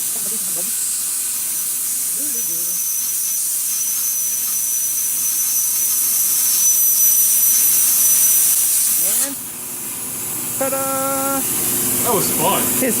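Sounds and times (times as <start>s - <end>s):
plasma cutter hissing: 0.0s - 13.0s
thin high whistle: 2.2s - 9.4s.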